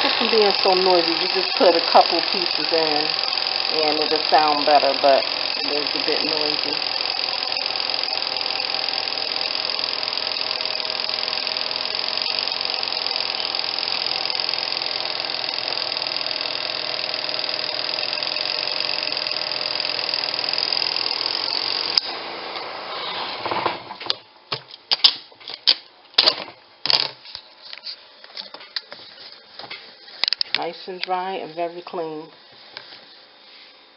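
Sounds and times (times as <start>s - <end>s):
spin-dryer running: 0.0s - 23.8s.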